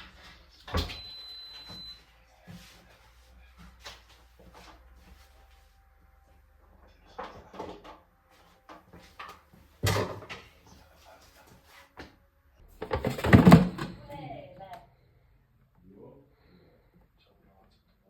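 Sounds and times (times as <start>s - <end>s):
kitchen things knocking and clattering: 9.8s - 10.6s, 12.8s - 14.2s.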